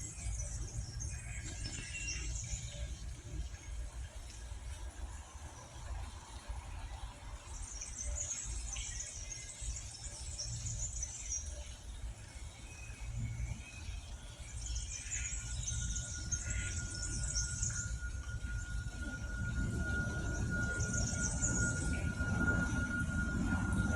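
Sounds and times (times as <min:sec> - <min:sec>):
low background rumble: 0:00.0 - 0:23.9
small birds twittering: 0:07.4 - 0:23.9.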